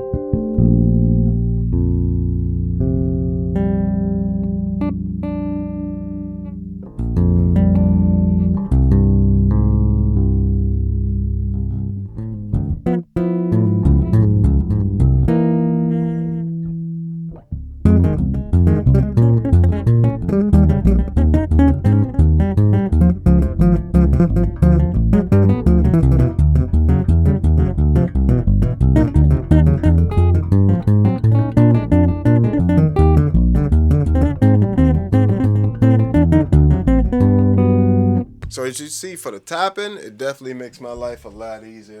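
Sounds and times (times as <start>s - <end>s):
electric bass notes: 0.0s - 38.7s.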